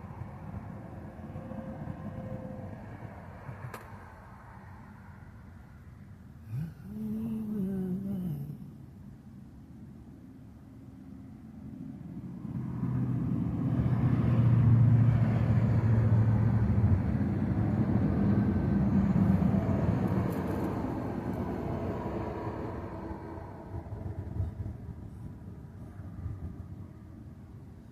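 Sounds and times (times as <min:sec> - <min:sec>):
passing vehicle rumble: 0:11.0 - 0:27.8.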